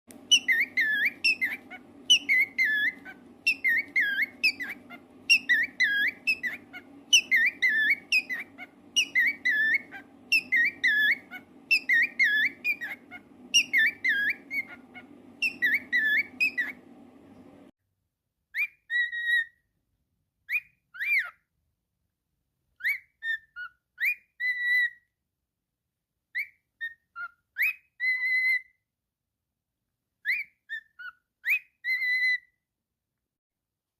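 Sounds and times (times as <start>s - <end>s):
cockatiel whistling: 0.1s - 17.0s, 18.5s - 19.6s, 20.5s - 21.4s, 22.8s - 25.0s, 26.3s - 28.8s, 30.2s - 32.5s
faint low hum: 0.1s - 17.7s.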